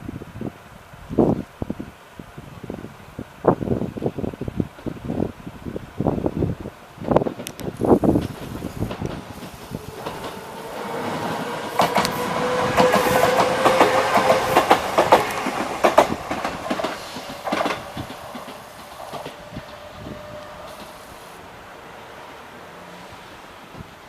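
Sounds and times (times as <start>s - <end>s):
electric train whine: 0.2s - 24.0s
train wheels clacking over rail joints: 7.0s - 21.3s.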